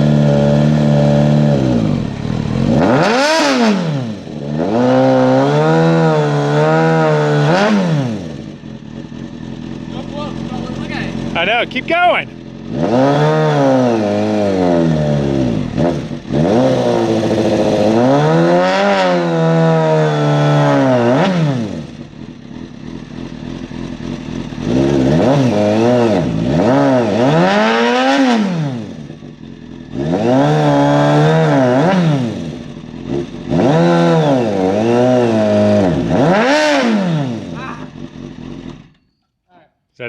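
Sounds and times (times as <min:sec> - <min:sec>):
motorcycle engine revving hard: 0:00.0 - 0:39.0.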